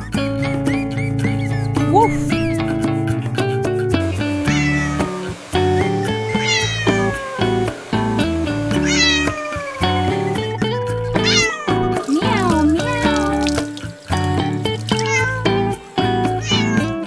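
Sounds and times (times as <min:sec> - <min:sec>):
bouncy background tune: 0:00.0 - 0:17.0
cat meowing: 0:00.7 - 0:02.6, 0:04.5 - 0:05.3, 0:06.3 - 0:07.7, 0:08.8 - 0:10.3, 0:11.1 - 0:13.4, 0:14.9 - 0:15.7, 0:16.4 - 0:16.9.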